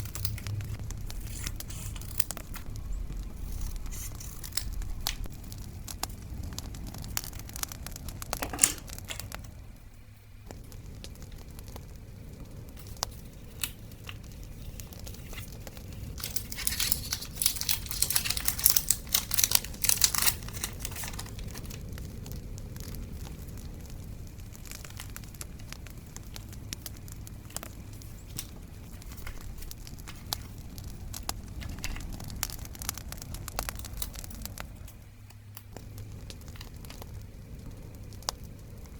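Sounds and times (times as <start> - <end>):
paper crinkling and tearing: 0.0 - 5.5, 12.8 - 22.0, 27.4 - 34.6
crackling bonfire: 0.0 - 38.9.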